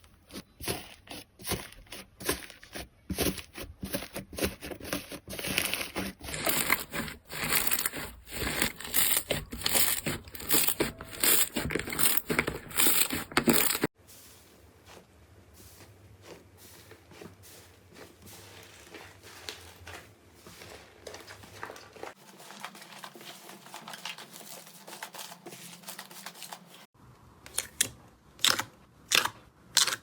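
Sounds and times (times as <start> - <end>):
crunchy slime crackling: 0.3 - 13.9.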